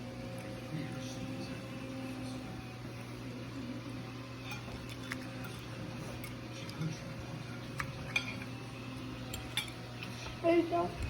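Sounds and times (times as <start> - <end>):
low steady hum: 0.0 - 11.0
cutlery clicking on plate: 7.8 - 8.6, 9.3 - 9.8.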